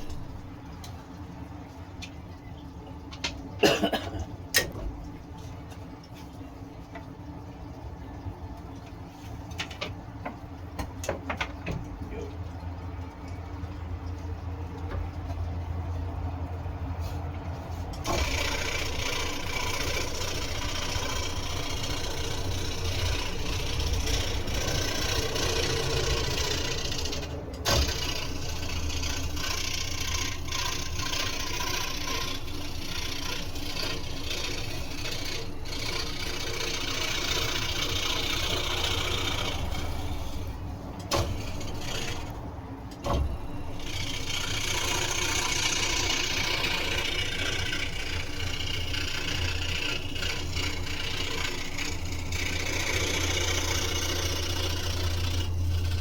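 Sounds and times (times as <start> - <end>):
scroll saw motor humming: 0.0 - 0.6, 17.8 - 56.0
saw blade rasping through wood: 18.0 - 42.4, 43.0 - 56.0.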